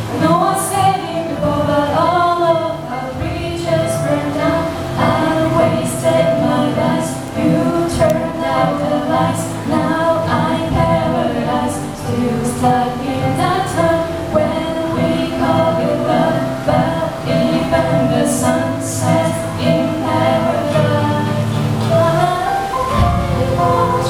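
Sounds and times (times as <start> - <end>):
girls singing pop song: 0.0 - 24.0
instrumental accompaniment: 0.0 - 24.0.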